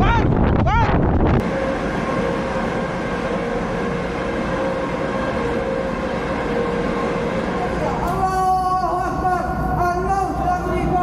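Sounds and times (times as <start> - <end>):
engine drone with whine: 0.2 - 11.0.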